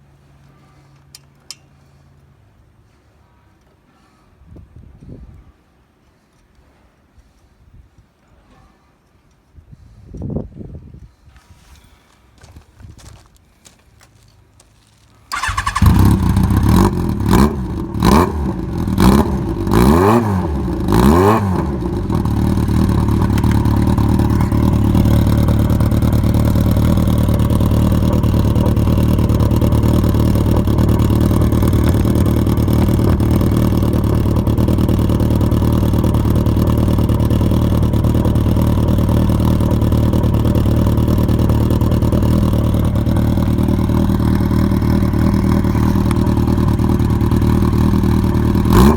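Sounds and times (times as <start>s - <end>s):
motorcycle engine idling: 15.3s - 48.9s
motorcycle throttle blips: 15.3s - 48.9s.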